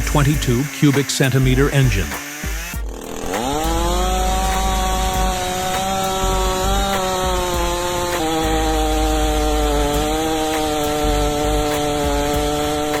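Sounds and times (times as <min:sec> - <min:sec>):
chainsaw engine at high revs: 0:00.0 - 0:13.0.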